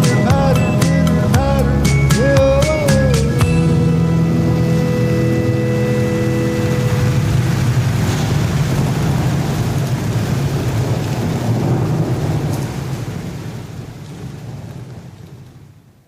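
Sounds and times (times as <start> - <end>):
rain rushing: 0.0 - 16.0
thunder rumbling: 3.4 - 16.0.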